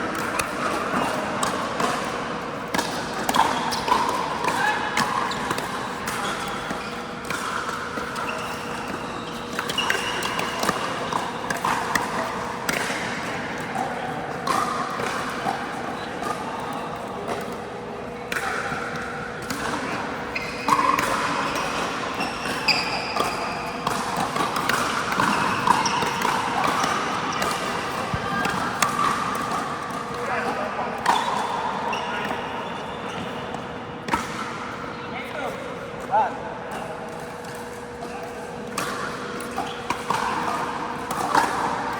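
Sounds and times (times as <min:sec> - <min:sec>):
ball bouncing on court: 0:20.4 - 0:33.4.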